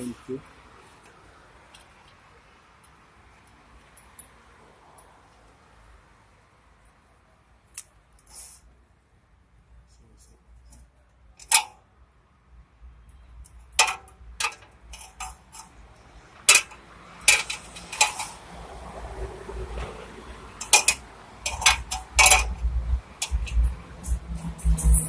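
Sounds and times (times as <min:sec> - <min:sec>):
metal clinks and knocks: 0:13.4 - 0:15.8, 0:16.4 - 0:18.4, 0:20.6 - 0:25.0
low rumble: 0:22.4 - 0:25.0.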